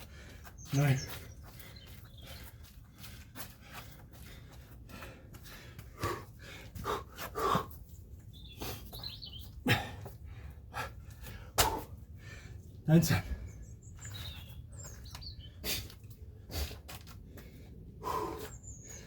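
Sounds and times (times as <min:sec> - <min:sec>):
man breathing hard: 0:00.0 - 0:13.6, 0:15.5 - 0:19.0
bird chirping: 0:00.3 - 0:03.2, 0:08.2 - 0:09.7, 0:13.3 - 0:15.9, 0:18.1 - 0:19.0.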